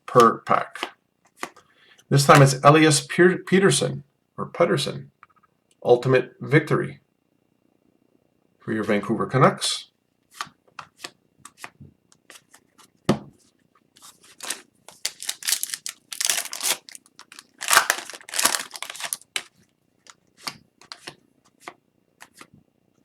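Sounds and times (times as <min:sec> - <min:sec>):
foil pack tearing and crinkling: 0:14.3 - 0:19.6
cards being flicked through: 0:14.4 - 0:19.5, 0:20.1 - 0:22.5.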